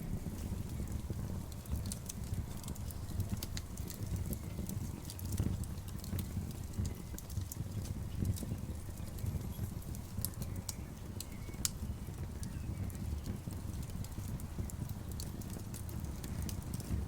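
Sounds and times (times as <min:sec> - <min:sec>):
steady low rumble: 0:00.0 - 0:03.7
campfire crackling: 0:00.0 - 0:17.0.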